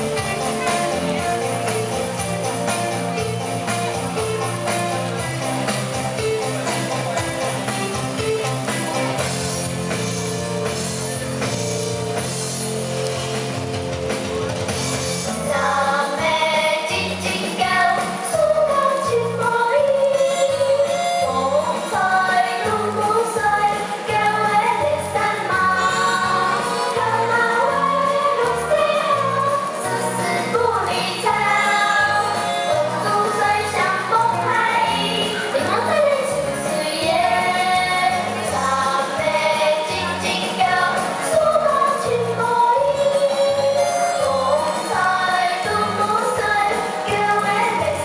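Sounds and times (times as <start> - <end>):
pop-rock song with singing: 14.1 - 48.0.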